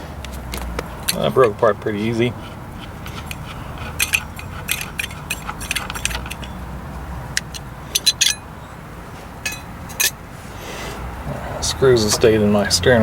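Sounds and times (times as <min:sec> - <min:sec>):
metal parts and wrench clinking: 0:00.2 - 0:08.7, 0:09.4 - 0:10.2.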